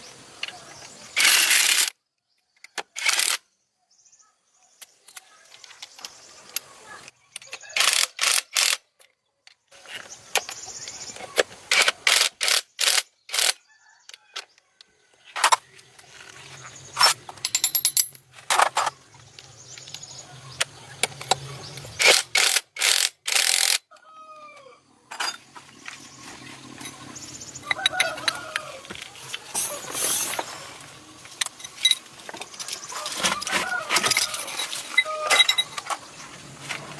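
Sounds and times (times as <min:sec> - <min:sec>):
chicken calling: 0:23.9 - 0:24.9, 0:26.9 - 0:36.2
hand tools clanking on metal: 0:25.1 - 0:26.0, 0:26.6 - 0:36.9.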